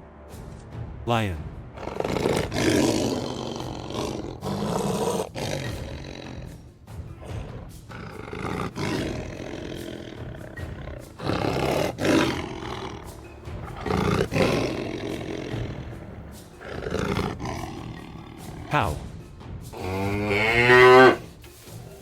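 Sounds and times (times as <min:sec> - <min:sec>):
lion roaring and grunting: 0:01.8 - 0:19.1, 0:19.7 - 0:21.3.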